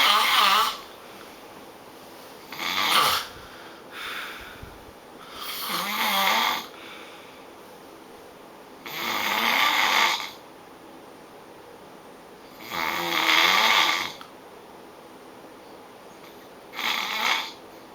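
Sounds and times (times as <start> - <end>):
person snoring loudly: 0.0 - 0.8, 2.5 - 3.4, 5.3 - 6.8, 8.9 - 10.4, 12.6 - 14.2.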